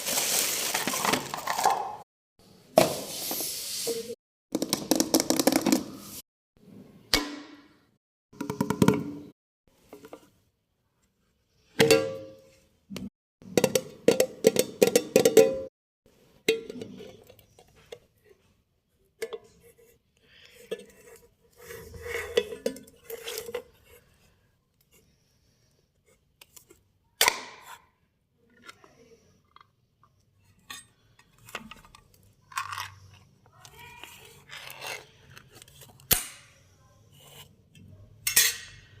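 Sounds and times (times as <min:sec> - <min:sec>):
lid and pot clicking and clattering: 0:13.5 - 0:15.7.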